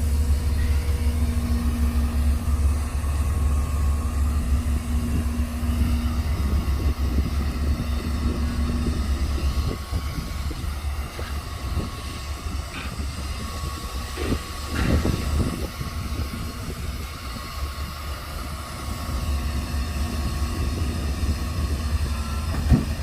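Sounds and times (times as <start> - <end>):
heavy diesel engine rumbling: 0.0 - 23.0.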